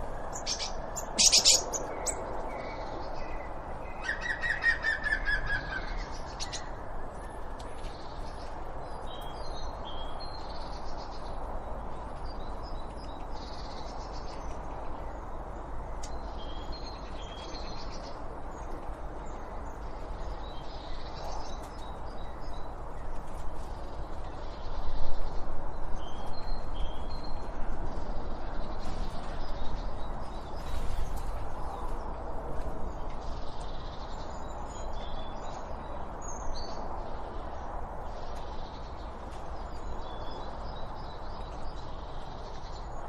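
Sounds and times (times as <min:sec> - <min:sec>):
birds chirping: 0:00.0 - 0:06.7.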